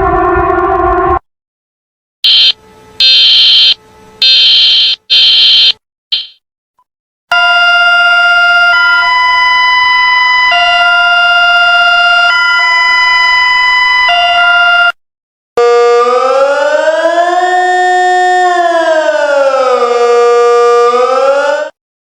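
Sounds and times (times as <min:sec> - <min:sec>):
civil defence siren wail: 0:00.0 - 0:01.2, 0:02.2 - 0:05.7, 0:07.3 - 0:15.0, 0:15.6 - 0:21.8
electronic two-chord alarm tone: 0:02.2 - 0:06.4.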